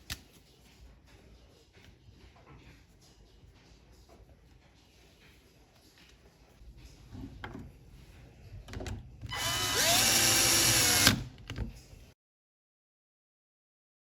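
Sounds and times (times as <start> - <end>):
impact driver motor whine: 9.3 - 11.3.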